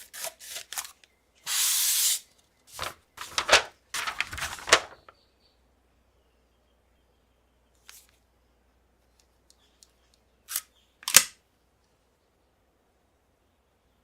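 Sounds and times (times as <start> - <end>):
sharp plastic snaps: 10.5 - 11.4.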